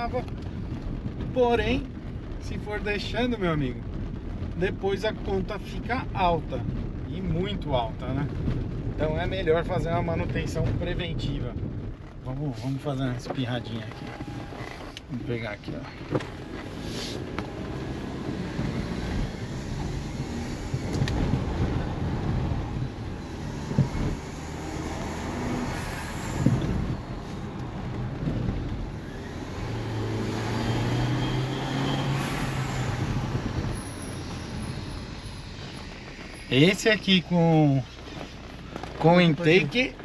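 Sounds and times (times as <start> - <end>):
road noise: 0.0 - 40.0
car engine accelerating: 11.6 - 40.0.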